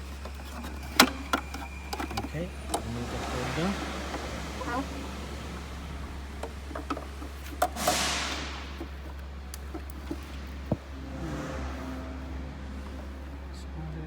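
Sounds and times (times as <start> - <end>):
steady low hum: 0.0 - 14.0
hiss: 7.7 - 9.2.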